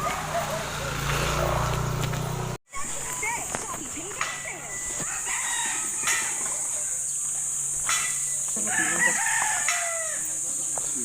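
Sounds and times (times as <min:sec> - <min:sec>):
insects buzzing: 0:00.9 - 0:11.0
rooster crowing: 0:04.7 - 0:07.2, 0:08.5 - 0:10.6.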